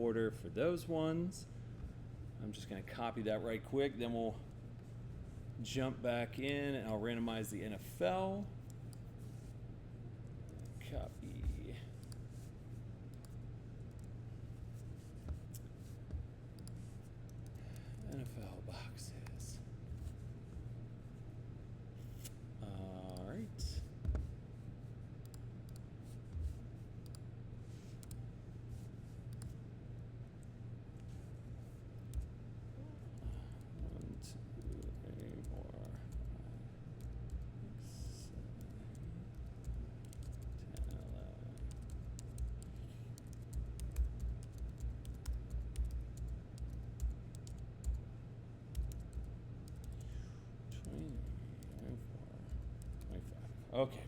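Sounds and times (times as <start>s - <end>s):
steady low hum: 0.0s - 54.0s
computer mouse and keyboard clicks: 29.3s - 29.6s, 38.6s - 48.0s.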